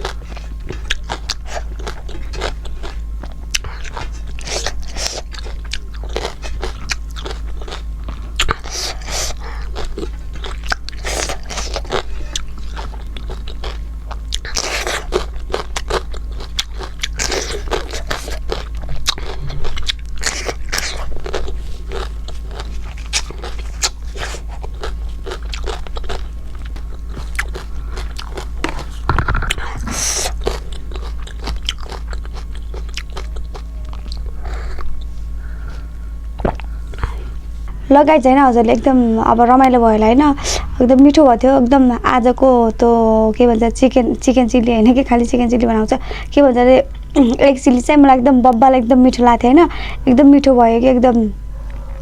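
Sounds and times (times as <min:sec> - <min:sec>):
person chewing and crunching: 0:00.0 - 0:41.0.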